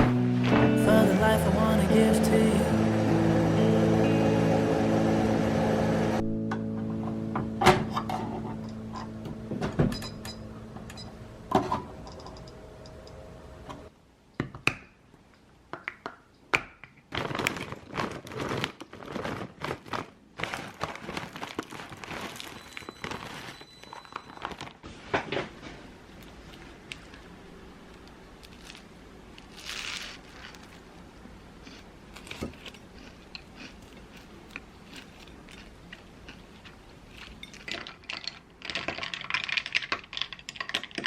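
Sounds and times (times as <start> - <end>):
background music: 0.0 - 11.4
objects being handled: 16.8 - 30.9.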